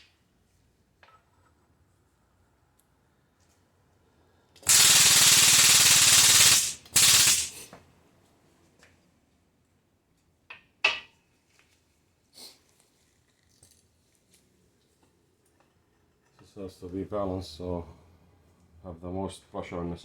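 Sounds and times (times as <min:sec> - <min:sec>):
pneumatic impact tool hammering: 0:04.6 - 0:07.7.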